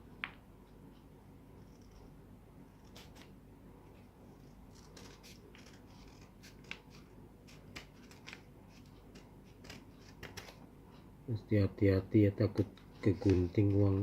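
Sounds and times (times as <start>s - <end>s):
scissors snipping paper: 4.7s - 10.6s.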